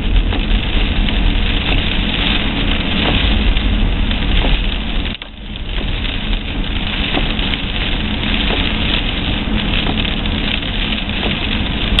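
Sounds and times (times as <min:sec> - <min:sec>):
low rumble: 0:00.0 - 0:12.0
road and tyre noise: 0:00.0 - 0:12.0.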